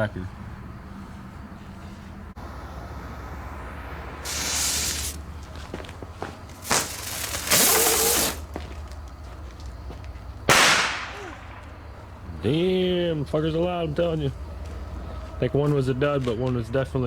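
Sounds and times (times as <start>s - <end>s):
firecracker fizzing hiss: 4.2s - 5.8s, 6.4s - 8.6s, 10.5s - 11.8s
firecracker sharp crack: 4.3s - 5.2s, 6.5s - 8.6s, 10.5s - 12.0s.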